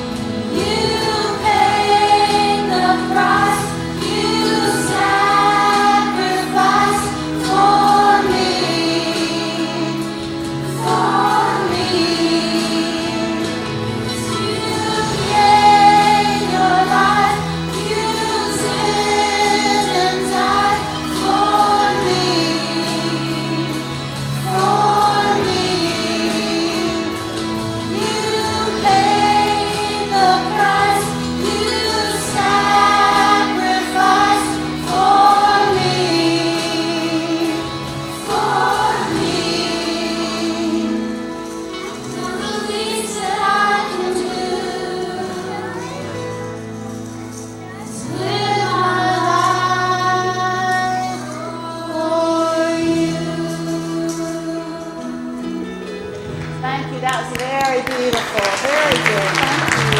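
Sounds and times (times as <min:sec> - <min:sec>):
children and adults singing: 0:00.0 - 0:56.2
musical accompaniment: 0:00.0 - 0:59.9.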